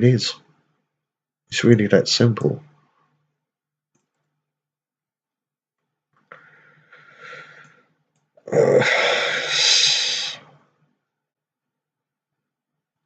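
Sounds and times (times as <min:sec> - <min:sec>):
person breathing out heavily: 0:06.3 - 0:07.9, 0:08.6 - 0:10.4.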